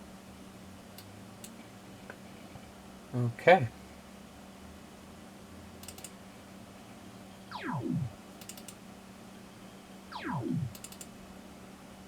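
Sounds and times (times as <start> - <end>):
steady low hum: 7.2 - 8.5, 10.0 - 12.0
falling electronic pitch sweep: 7.5 - 8.2, 10.1 - 10.8.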